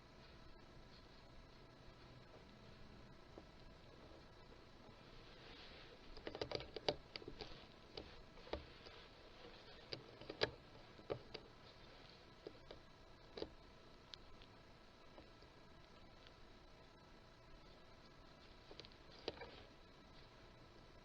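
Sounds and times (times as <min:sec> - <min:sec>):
faint sharp clicks and crackles: 0:00.0 - 0:21.0.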